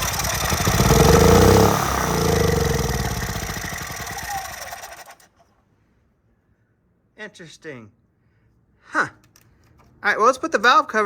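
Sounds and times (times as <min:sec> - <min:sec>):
generator engine running: 0:00.0 - 0:05.2.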